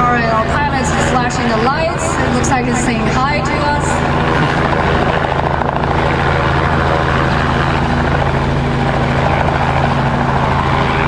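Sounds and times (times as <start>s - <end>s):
helicopter rotor and engine drone: 0.0s - 11.0s.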